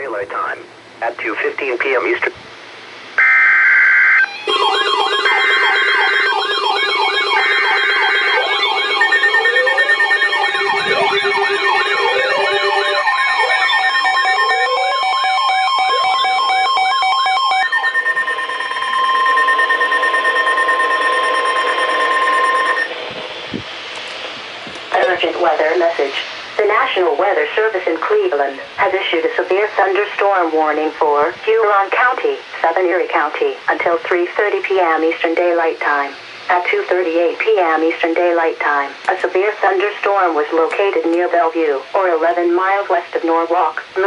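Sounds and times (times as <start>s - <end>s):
electronic wailing tones: 3.2s - 23.6s
steady attention tones: 3.2s - 34.8s
digital header data bursts: 4.2s - 23.2s.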